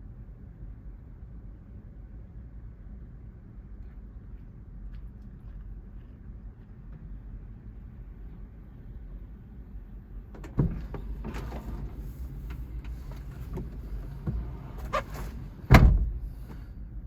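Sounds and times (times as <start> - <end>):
low steady rumble: 0.0 - 17.0
heavy thump: 15.7 - 16.3.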